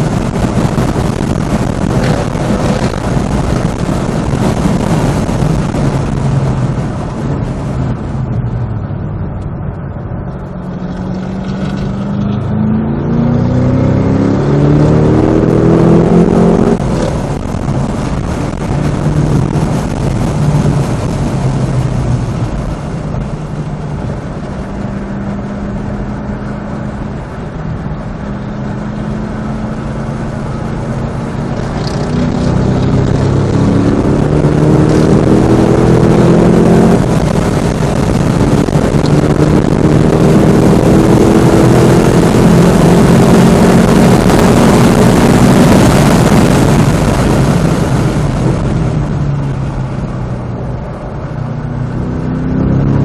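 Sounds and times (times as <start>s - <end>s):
car engine accelerating hard: 0.0s - 53.0s
wind noise: 0.0s - 53.0s.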